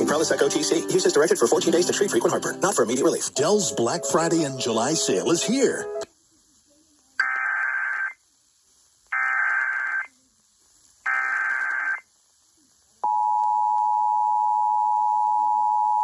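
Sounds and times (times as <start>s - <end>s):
warbling data tone bursts: 11.1s - 12.1s.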